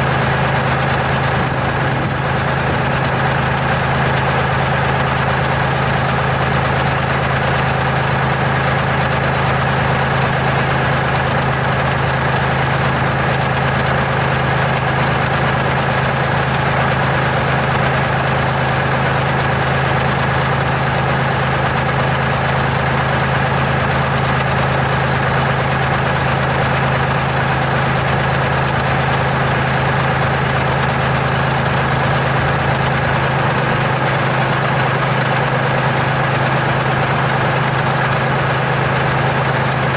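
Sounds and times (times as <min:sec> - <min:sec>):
diesel truck engine idling: 0:00.0 - 0:39.9.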